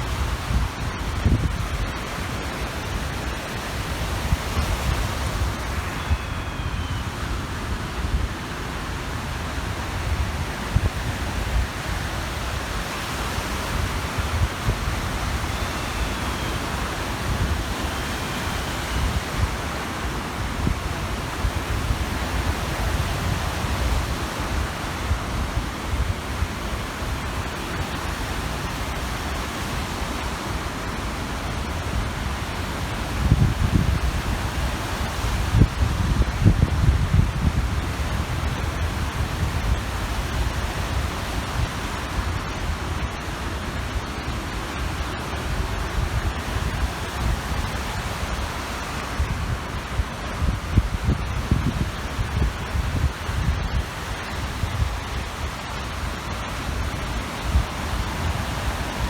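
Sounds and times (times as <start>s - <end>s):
wind gusting on microphone: 0.0s - 59.0s
faint gull calls: 5.4s - 7.4s
small waves washing on shore: 7.0s - 59.0s.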